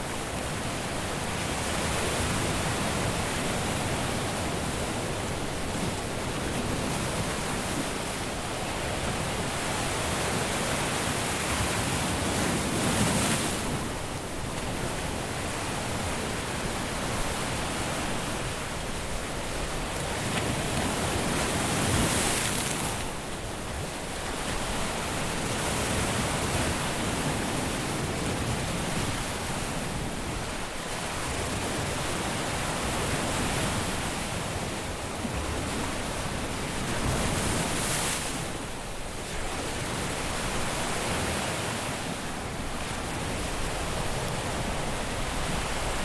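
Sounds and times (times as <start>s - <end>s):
sea surf washing onto beach: 0.0s - 46.0s.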